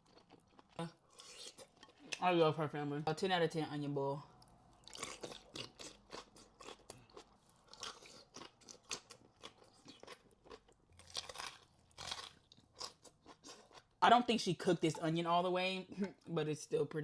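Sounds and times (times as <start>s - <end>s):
close-miked chewing: 0.0s - 2.2s, 4.3s - 14.0s.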